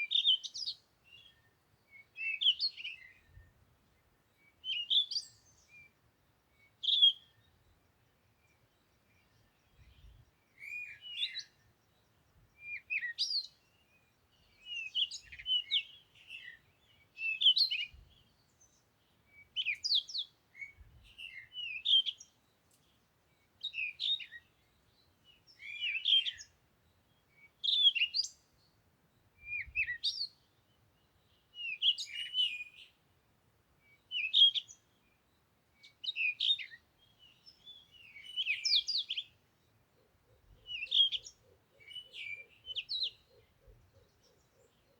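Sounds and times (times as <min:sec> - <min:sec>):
songbird chirping: 0:00.0 - 0:44.9.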